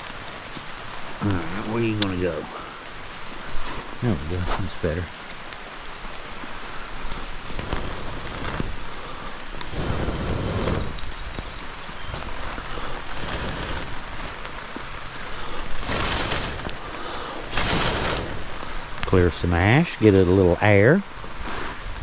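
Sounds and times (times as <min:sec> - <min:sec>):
steady rain falling: 0:00.0 - 0:22.0.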